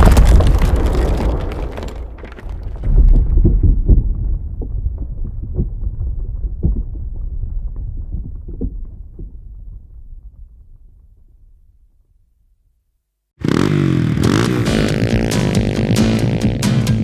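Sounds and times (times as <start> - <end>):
crackles and knocks: 0.0 - 12.3
explosion low rumble: 0.0 - 12.4.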